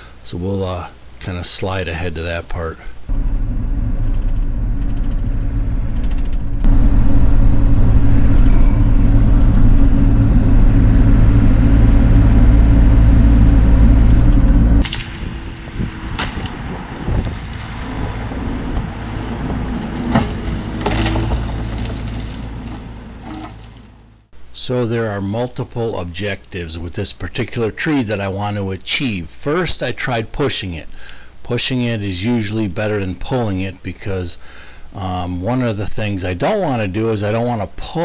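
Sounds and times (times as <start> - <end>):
excavator diesel engine: 3.1 - 24.3.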